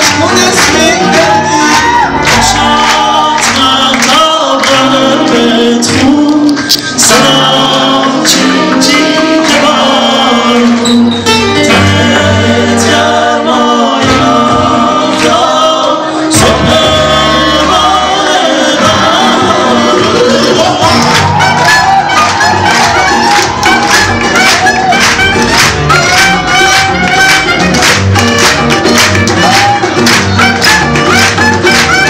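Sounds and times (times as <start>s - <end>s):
live band music: 0.0s - 32.0s.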